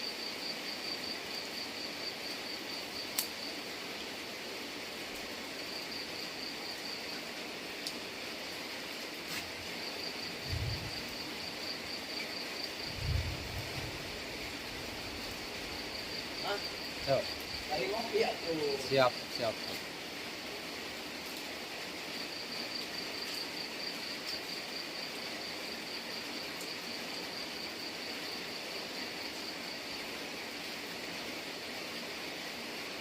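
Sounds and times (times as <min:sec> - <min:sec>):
steady rain hiss: 0:00.0 - 0:33.0
cricket trilling: 0:09.4 - 0:19.9
low thuds: 0:10.5 - 0:11.0.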